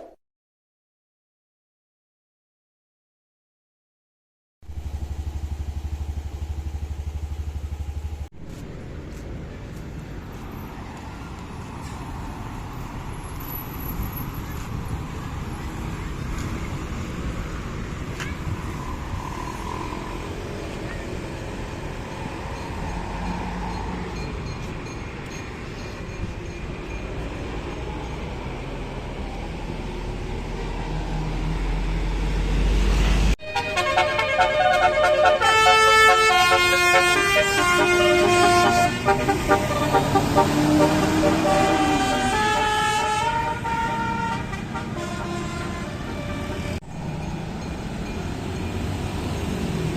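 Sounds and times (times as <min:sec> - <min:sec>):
bus engines and road traffic: 0:04.6 - 0:49.9
heavy engine: 0:04.6 - 0:49.9
multi-note bus horn tune: 0:33.4 - 0:46.8.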